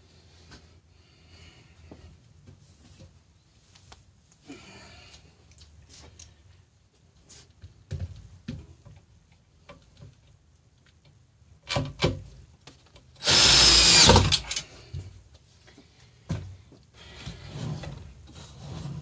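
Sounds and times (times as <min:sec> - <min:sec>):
power drill whine: 0:13.2 - 0:14.6.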